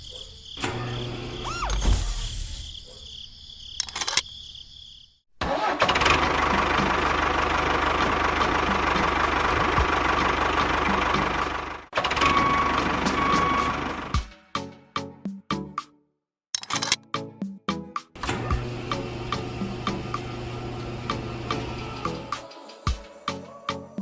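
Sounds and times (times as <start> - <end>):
motor running with high whine: 18.2 - 22.3.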